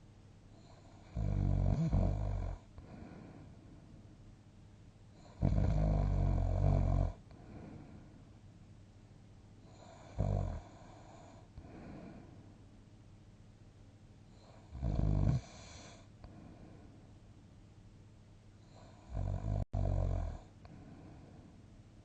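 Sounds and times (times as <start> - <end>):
person snoring: 0.7 - 3.4, 5.3 - 7.9, 9.7 - 12.3, 14.4 - 16.1
soft airy breathing: 2.7 - 4.2, 7.2 - 8.4, 10.8 - 12.7, 15.4 - 17.3, 20.5 - 21.8.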